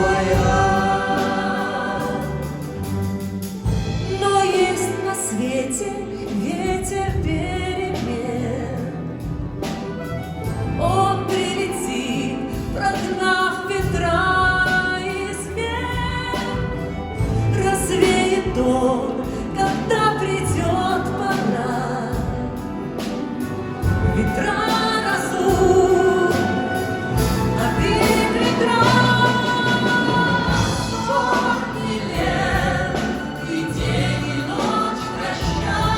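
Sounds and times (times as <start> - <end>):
voices singing: 0.0 - 3.4, 23.9 - 35.9
folk instrument orchestra playing: 0.0 - 35.9.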